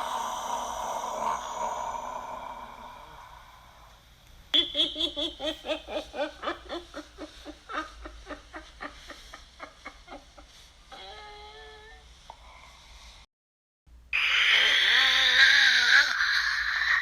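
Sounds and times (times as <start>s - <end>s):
demonic laughter: 4.6s - 11.1s, 14.2s - 17.0s.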